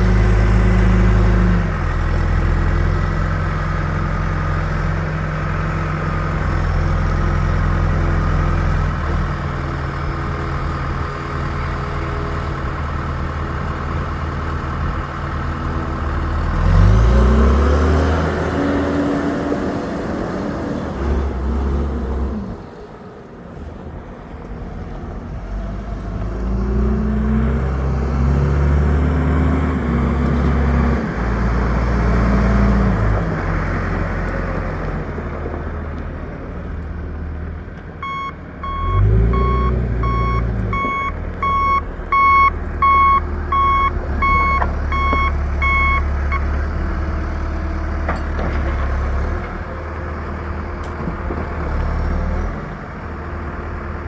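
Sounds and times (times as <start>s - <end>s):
diesel engine running and revving: 0.0s - 54.0s.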